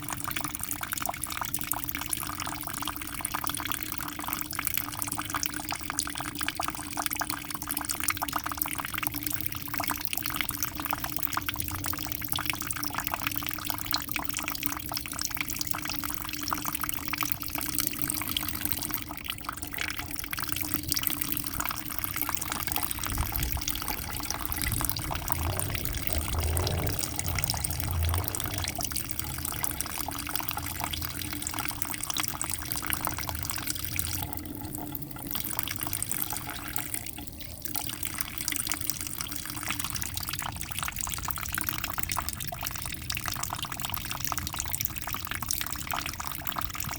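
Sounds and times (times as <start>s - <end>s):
aquarium water splashing and bubbling: 20.4s - 35.9s
steady low hum: 21.4s - 32.1s.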